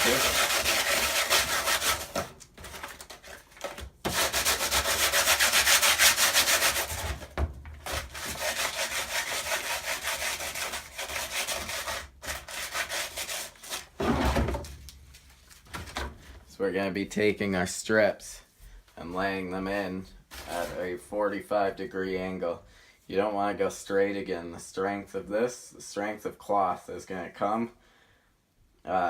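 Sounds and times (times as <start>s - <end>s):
sandpaper rasping on fiberglass: 0.0s - 2.2s, 4.1s - 7.2s, 7.9s - 13.9s.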